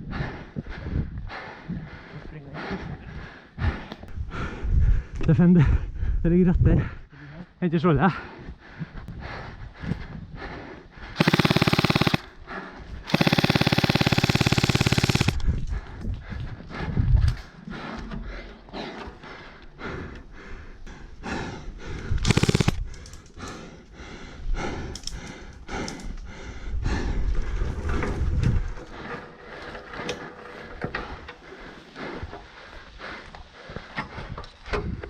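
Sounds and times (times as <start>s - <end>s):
airsoft single shots: 11.2s - 12.2s, 13.1s - 15.4s
airsoft gun full-auto burst: 11.2s - 12.3s, 13.1s - 15.4s, 22.2s - 22.8s.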